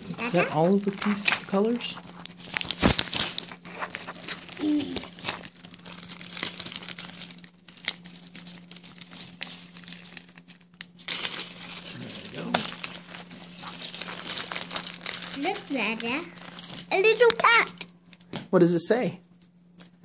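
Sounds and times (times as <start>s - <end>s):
plastic bags crinkling: 0.0s - 17.8s.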